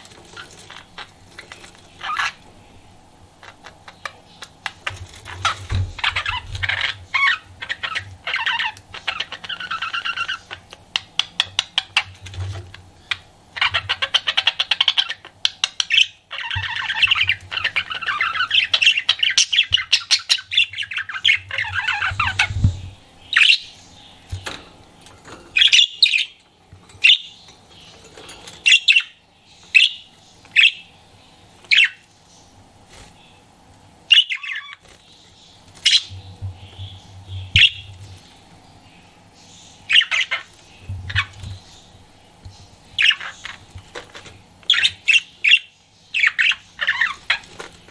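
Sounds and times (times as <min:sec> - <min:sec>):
budgerigar warbling and chattering: 0:01.9 - 0:02.4, 0:03.4 - 0:12.2, 0:13.0 - 0:24.2, 0:25.6 - 0:26.4, 0:28.6 - 0:30.9, 0:31.7 - 0:32.0, 0:34.1 - 0:34.8, 0:35.8 - 0:37.9, 0:39.6 - 0:41.9, 0:43.0 - 0:43.7, 0:44.7 - 0:47.5
budgerigar chirps: 0:34.1 - 0:34.8.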